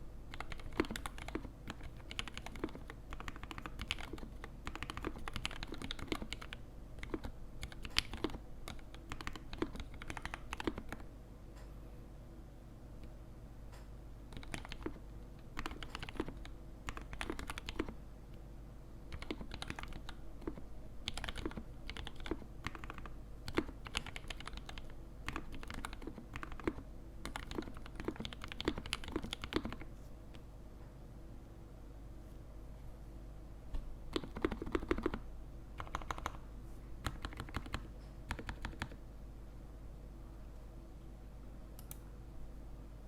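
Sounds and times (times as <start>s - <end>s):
low hum of recording noise: 0.0s - 43.0s
mechanical keyboard typing: 0.3s - 11.1s, 14.3s - 18.0s, 19.1s - 29.9s, 34.1s - 35.2s, 35.8s - 36.4s, 37.0s - 39.0s.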